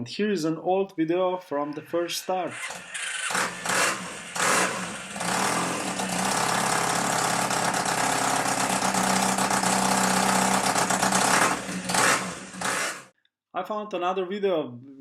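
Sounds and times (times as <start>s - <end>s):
motorcycle engine idling: 2.8s - 12.6s.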